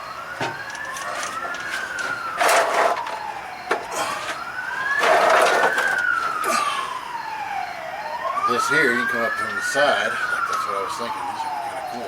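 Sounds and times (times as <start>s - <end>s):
emergency vehicle siren wailing: 0.0s - 12.0s.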